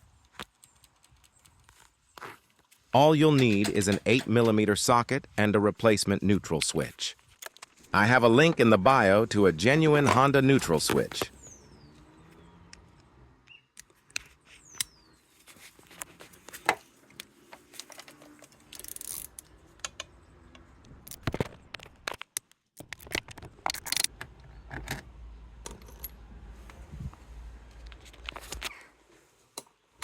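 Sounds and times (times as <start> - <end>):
metal tools clinking and scraping: 25.7 - 26.2.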